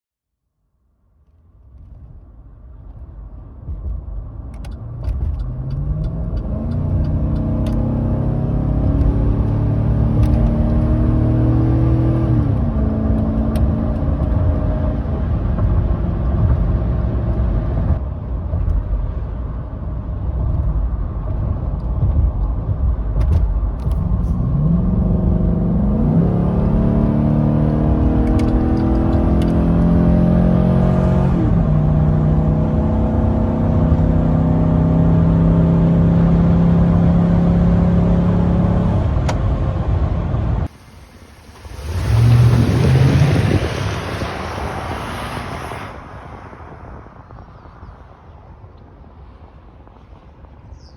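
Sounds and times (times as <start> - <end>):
car engine accelerating through gears: 2.8 - 19.3, 20.3 - 40.7, 41.6 - 46.0.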